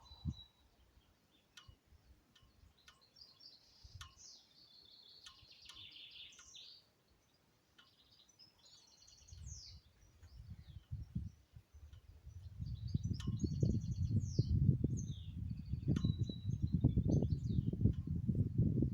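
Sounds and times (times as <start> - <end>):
faint songbirds chirping: 0.0 - 18.9
wind gusts on microphone: 9.4 - 18.9.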